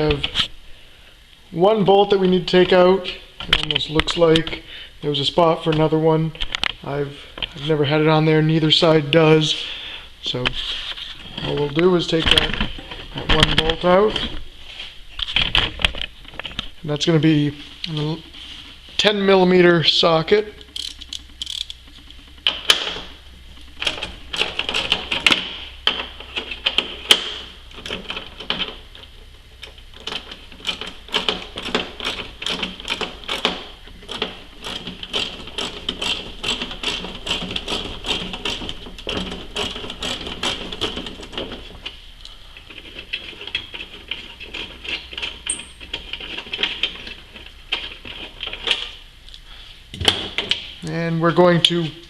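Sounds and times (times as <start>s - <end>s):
socket ratchet clicking: 20.6s - 21.8s.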